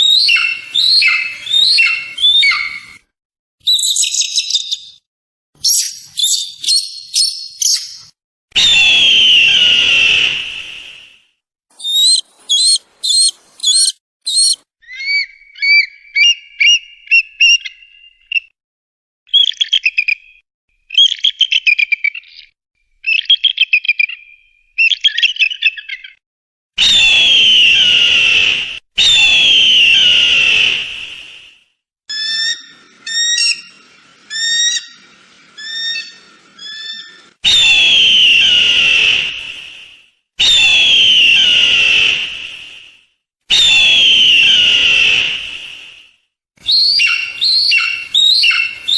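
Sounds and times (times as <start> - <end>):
eagle harsh screams: 0.0 - 3.0, 8.6 - 10.4, 11.8 - 15.8, 35.6 - 39.5, 40.4 - 42.3, 43.5 - 45.4, 46.6 - 48.9
eagle piping calls: 0.0 - 3.0, 11.8 - 17.8, 32.1 - 37.8, 46.6 - 48.9.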